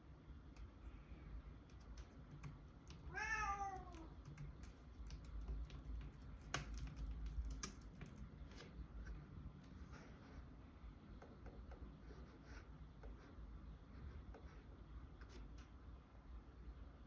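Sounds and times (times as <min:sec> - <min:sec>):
cat meowing: 0:03.1 - 0:04.2
keyboard key clicks: 0:03.8 - 0:08.2.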